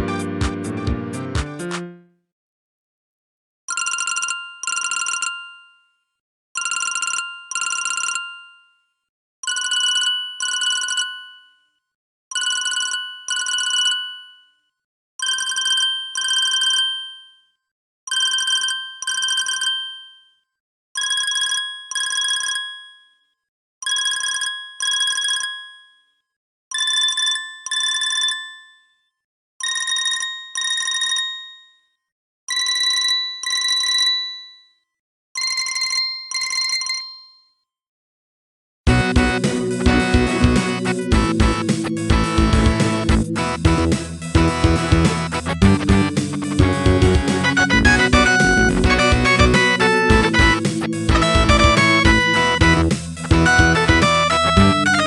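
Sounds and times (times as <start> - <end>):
phone ringtone double ring: 3.7 - 11.7, 12.3 - 14.6, 15.2 - 17.5, 18.1 - 20.4, 21.0 - 23.2, 23.8 - 26.1, 26.7 - 29.0, 29.6 - 31.9, 32.5 - 34.7, 35.4 - 37.5, 47.1 - 55.0.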